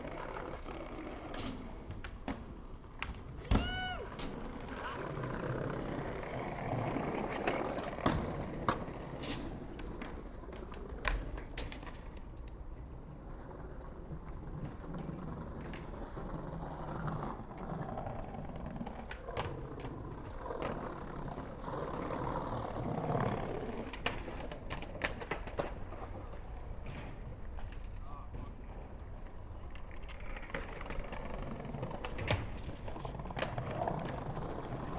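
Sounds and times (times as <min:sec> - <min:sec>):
skateboard deck clacking: 0:00.0 - 0:34.9
skateboard wheels rumbling: 0:00.0 - 0:34.9.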